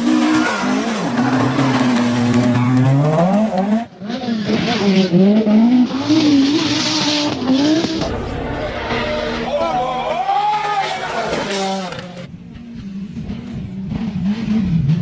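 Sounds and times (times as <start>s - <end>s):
rally car engines at high revs: 0.0s - 9.4s, 10.8s - 15.0s.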